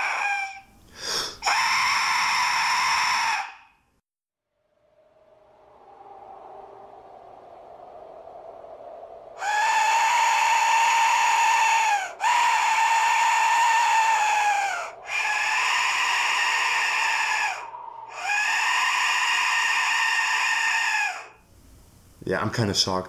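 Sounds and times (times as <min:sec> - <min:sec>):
harsh screeching whistle blasts: 0:01.4 - 0:03.8, 0:09.4 - 0:21.4.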